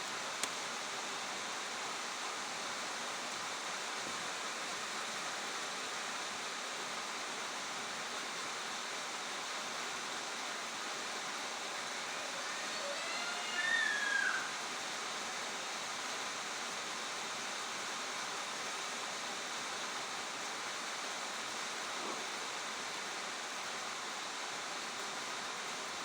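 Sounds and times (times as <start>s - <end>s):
short falling call: 12.3s - 14.6s.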